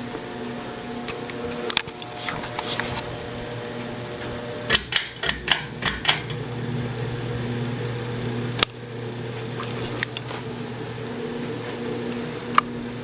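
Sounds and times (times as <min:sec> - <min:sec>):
ceiling fan motor hum: 0:00.0 - 0:13.0
sharp clicks: 0:04.7 - 0:06.4.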